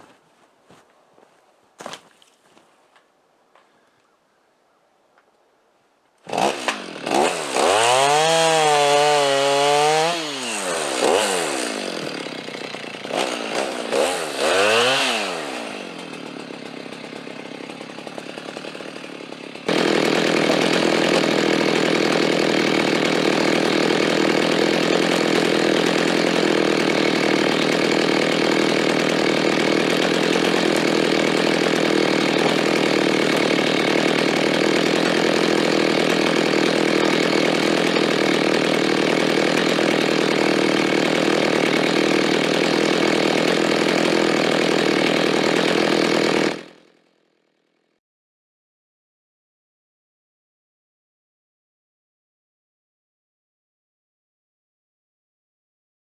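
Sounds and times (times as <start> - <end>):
chainsaw engine revving: 6.2 - 47.0.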